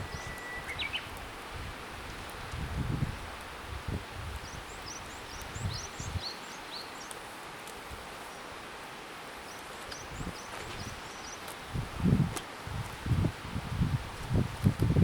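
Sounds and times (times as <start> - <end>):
small birds chirping: 0.0 - 1.2, 4.4 - 7.3, 9.4 - 11.7
wind buffeting microphone: 0.0 - 6.3, 10.0 - 15.0
faint crackles: 0.0 - 15.0.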